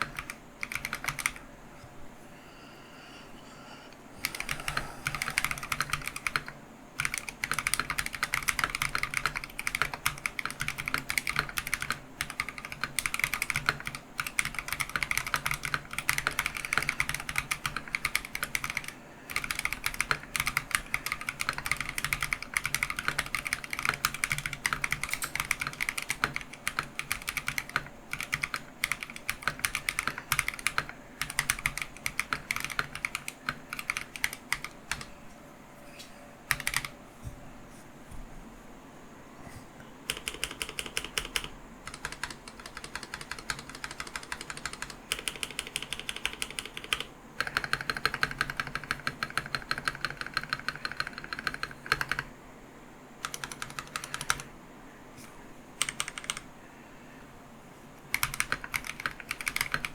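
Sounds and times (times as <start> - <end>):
fast typing on mechanical keyboard: 0.0 - 1.4, 4.2 - 35.1, 36.5 - 36.9, 40.1 - 52.3, 53.2 - 54.5, 55.8 - 56.5, 58.1 - 59.9.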